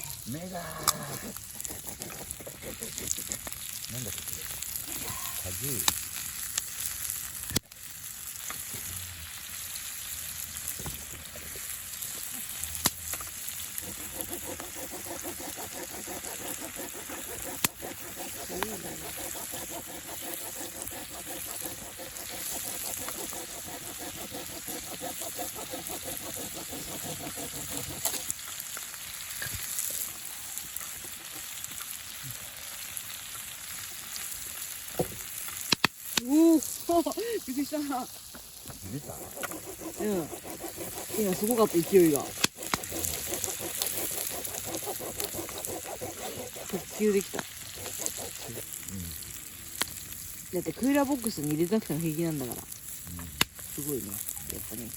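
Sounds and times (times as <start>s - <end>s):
food sizzling in a pan: 0.0s - 54.9s
sharp pops: 35.0s - 36.3s, 42.4s - 43.0s, 53.4s - 53.6s.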